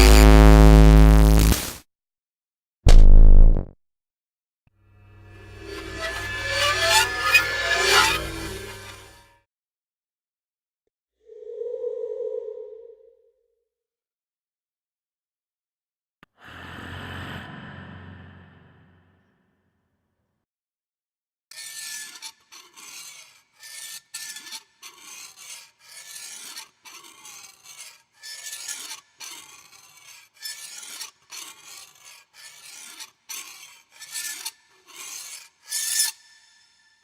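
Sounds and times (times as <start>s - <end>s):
harsh rasping scrapes: 5.1s - 9.3s, 21.5s - 37.0s.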